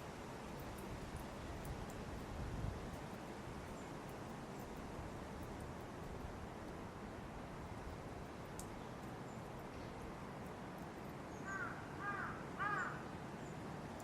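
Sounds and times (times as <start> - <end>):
wind through leafy trees: 0.0 - 14.0
crow cawing: 11.4 - 13.0.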